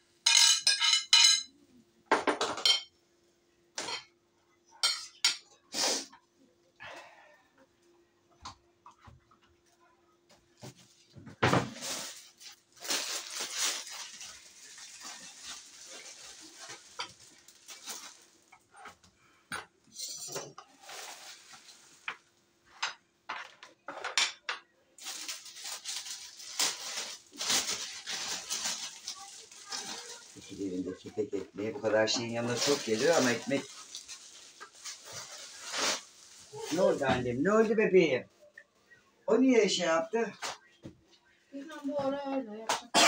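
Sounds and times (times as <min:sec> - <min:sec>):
cutlery and dishes clinking: 0:00.2 - 0:01.5, 0:04.8 - 0:05.5, 0:19.5 - 0:20.7.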